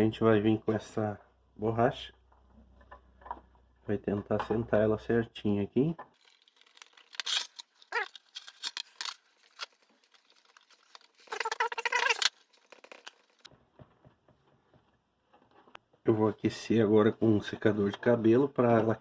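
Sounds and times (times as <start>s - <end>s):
rubber gasket clicking and rubbing: 6.2s - 13.5s
rubber squeaking: 6.2s - 13.5s.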